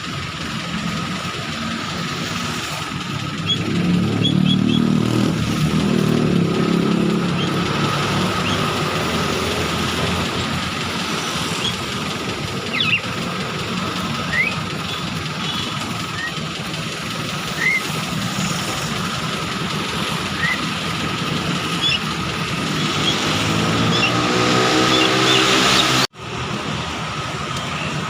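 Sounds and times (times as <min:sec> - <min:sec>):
motorcycle engine passing: 0:02.0 - 0:26.1
starling chirps: 0:03.2 - 0:16.5, 0:17.3 - 0:26.0.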